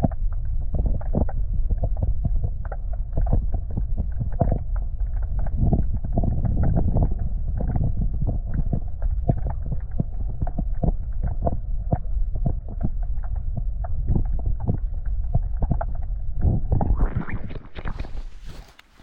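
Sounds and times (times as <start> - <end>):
low microphone rumble: 0.0 - 18.8
footsteps: 17.0 - 19.0.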